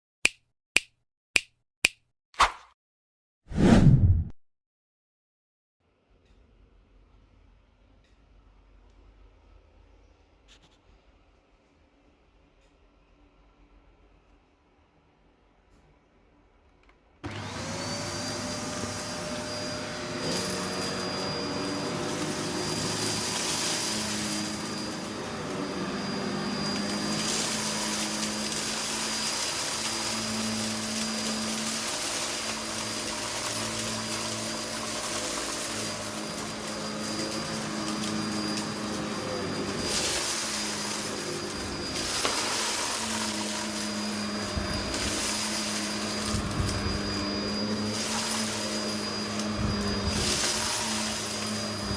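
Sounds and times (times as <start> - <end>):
vacuum cleaner motor whining: 17.2 - 51.9.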